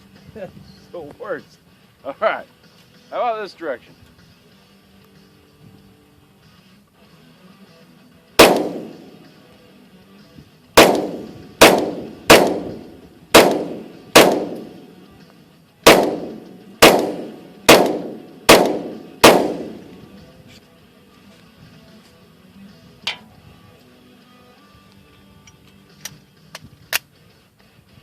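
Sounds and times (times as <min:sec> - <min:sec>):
pistol shots: 0:08.4 - 0:09.4, 0:10.8 - 0:15.0, 0:15.8 - 0:20.0.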